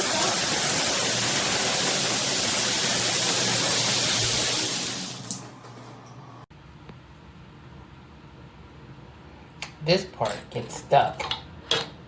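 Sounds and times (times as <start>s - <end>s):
shower water spraying: 0.0s - 6.0s.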